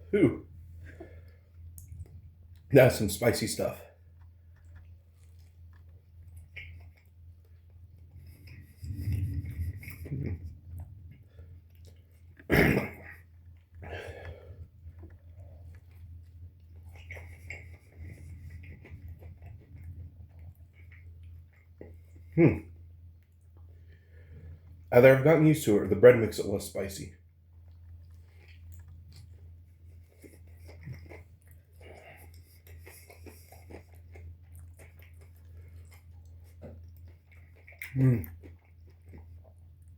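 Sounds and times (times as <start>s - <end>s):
person chewing food: 0.0s - 2.7s, 3.8s - 24.9s, 27.2s - 39.9s
steady low hum: 0.0s - 39.9s
mouth clicks and smacks: 31.8s - 39.3s.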